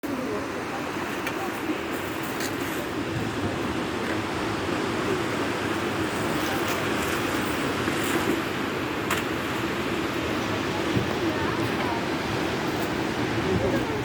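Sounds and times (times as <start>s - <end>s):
sea surf breaking on shore: 0.0s - 14.0s.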